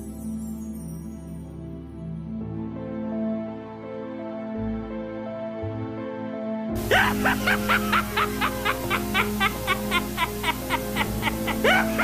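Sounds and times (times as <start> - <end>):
slow music with held notes: 0.0 - 12.0.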